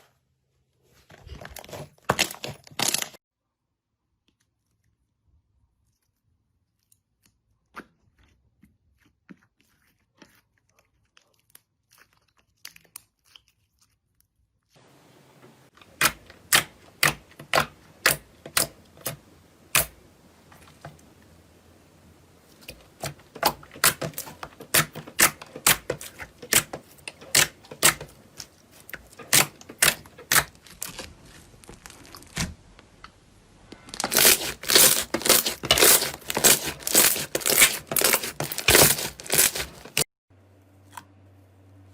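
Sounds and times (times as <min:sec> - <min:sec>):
slime popping and crackling: 0:33.9 - 0:40.0.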